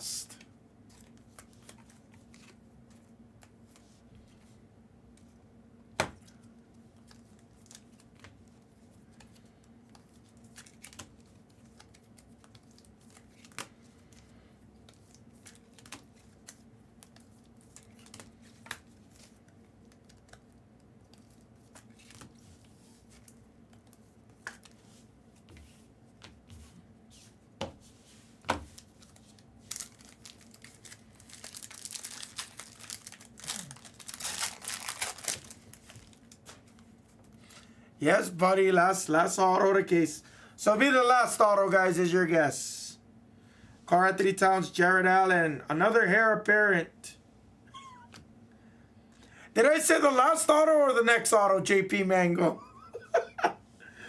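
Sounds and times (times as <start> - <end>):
wrapper crinkling and tearing: 28.8 - 36.8.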